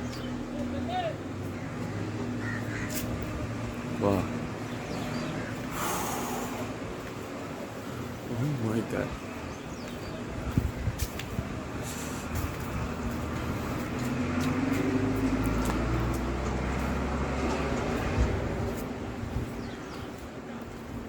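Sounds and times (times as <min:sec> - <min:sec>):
vehicle engine passing by: 0:00.0 - 0:09.1, 0:11.4 - 0:20.6.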